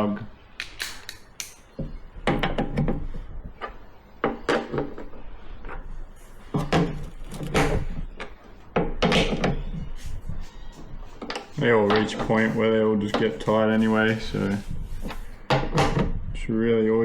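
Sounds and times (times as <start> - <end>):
hand tools clicking on metal: 0.6 - 1.9.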